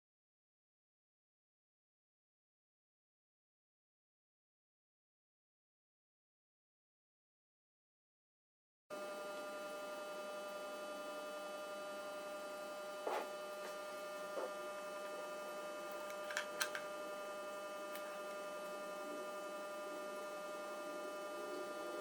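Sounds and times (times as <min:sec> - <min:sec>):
steady electrical hum: 0:08.9 - 0:22.0.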